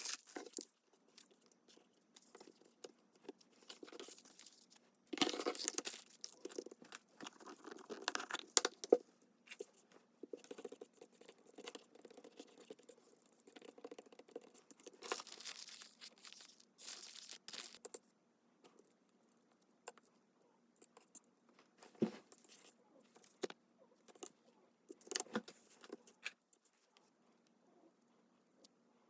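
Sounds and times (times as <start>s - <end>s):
paper rustling and ripping: 15.0s - 17.8s.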